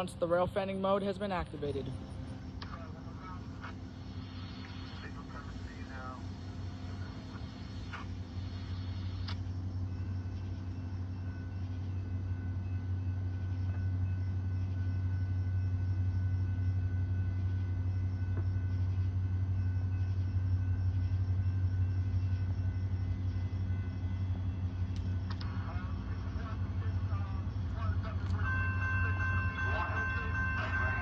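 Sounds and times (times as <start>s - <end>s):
low engine rumble: 0.0s - 31.0s.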